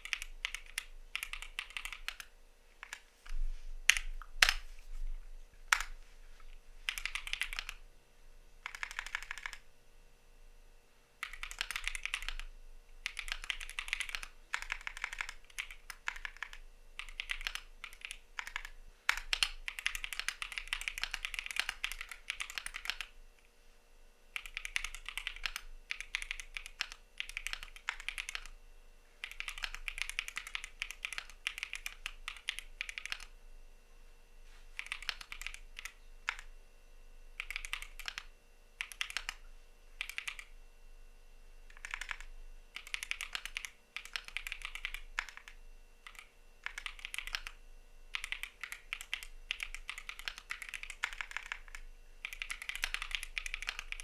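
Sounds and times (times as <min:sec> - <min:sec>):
mechanical keyboard typing: 0:00.0 - 0:03.1, 0:03.9 - 0:04.7, 0:05.7 - 0:06.0, 0:06.9 - 0:07.8, 0:08.6 - 0:09.6, 0:11.2 - 0:23.2, 0:24.4 - 0:28.6, 0:29.2 - 0:33.3, 0:34.8 - 0:36.5, 0:37.4 - 0:39.4, 0:40.0 - 0:40.5, 0:41.7 - 0:54.0.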